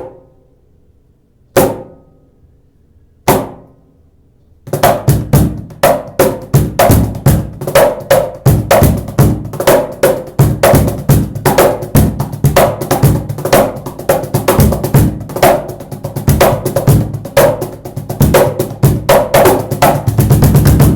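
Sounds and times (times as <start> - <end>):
cajon played by hand: 4.7 - 20.9.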